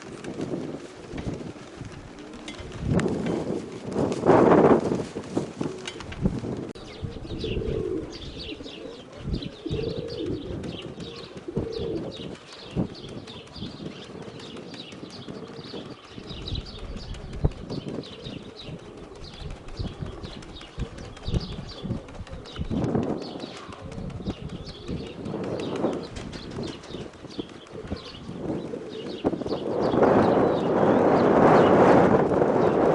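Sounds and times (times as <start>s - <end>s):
pigeons cooing: 0.0s - 3.6s, 4.9s - 31.7s
small birds chirping: 6.8s - 31.7s.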